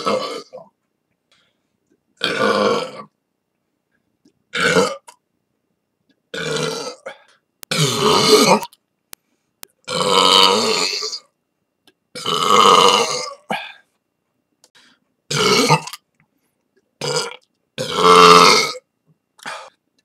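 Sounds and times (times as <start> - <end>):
person burping loudly: 0.0 - 0.7, 2.2 - 3.1, 4.5 - 5.2, 6.3 - 8.8, 9.8 - 11.3, 12.2 - 13.8, 15.3 - 16.1, 17.0 - 19.8.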